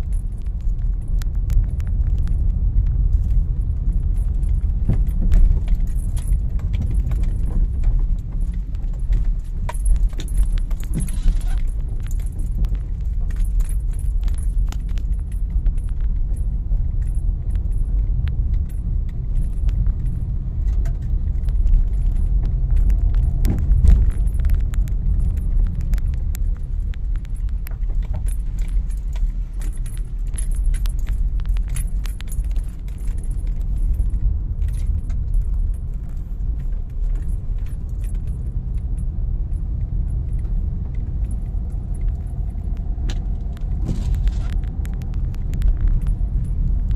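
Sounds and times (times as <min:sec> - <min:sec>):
car rumbling on rough road: 0:00.0 - 0:46.9
car jolting: 0:43.0 - 0:46.4.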